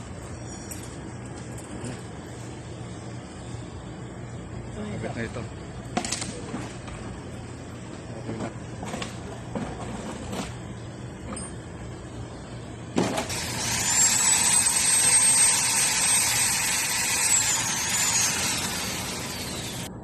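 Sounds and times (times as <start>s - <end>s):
electric motor whining: 13.0s - 19.9s.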